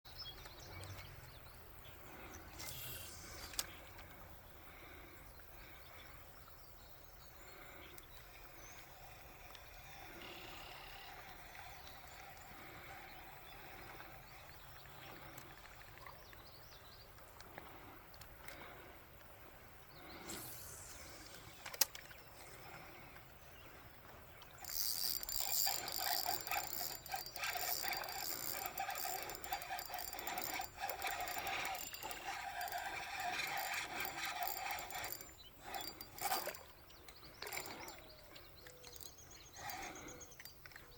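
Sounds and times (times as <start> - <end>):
faint bird chirps: 0.1 - 17.1
fishing reel clicking and whirring: 2.0 - 5.8, 7.5 - 16.0, 20.1 - 23.3, 24.4 - 40.9.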